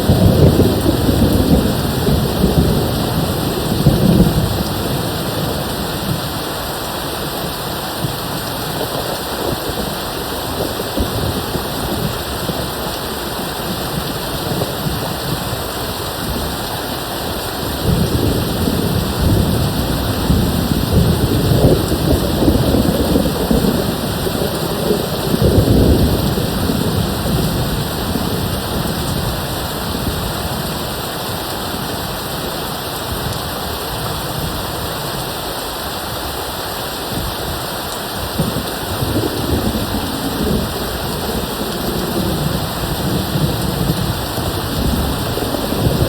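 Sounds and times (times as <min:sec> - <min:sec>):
distant thunder rolling: 0:00.0 - 0:33.4, 0:38.2 - 0:46.0
steady rain: 0:00.0 - 0:46.0.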